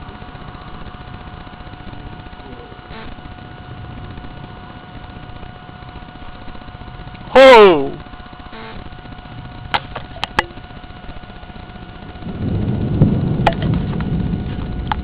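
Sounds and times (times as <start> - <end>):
thunder rumbling: 0.0 - 7.1, 10.4 - 15.0.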